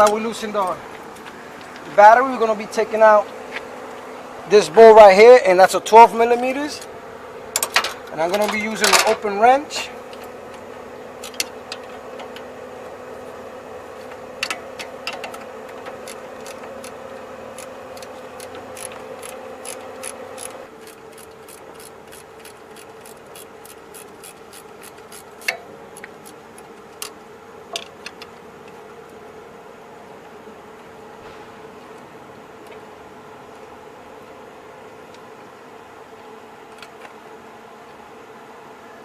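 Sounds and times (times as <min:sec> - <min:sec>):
steady hum: 0:00.0 - 0:39.0
wrench clicking against bolt: 0:14.4 - 0:27.2.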